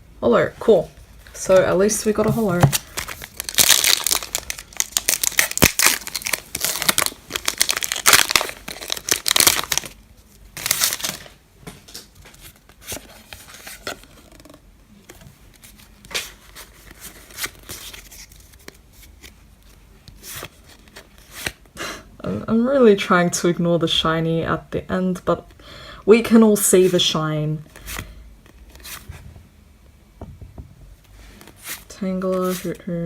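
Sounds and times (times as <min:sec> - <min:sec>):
cards rustling and clicking: 0:02.1 - 0:10.0
foil wrapper crinkling and tearing: 0:02.7 - 0:10.0, 0:10.6 - 0:12.1.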